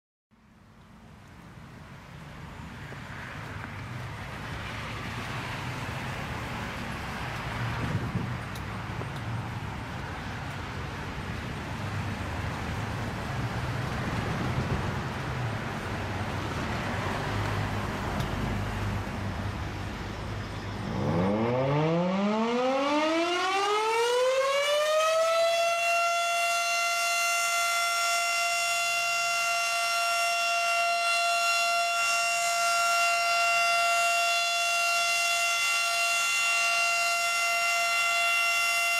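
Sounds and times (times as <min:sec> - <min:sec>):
steady background noise: 0:00.4 - 0:38.9
civil defense siren winding up: 0:20.3 - 0:38.9.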